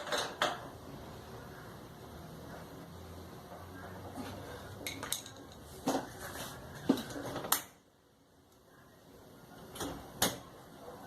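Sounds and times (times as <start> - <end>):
metal tools clinking and knocking: 4.8 - 5.7.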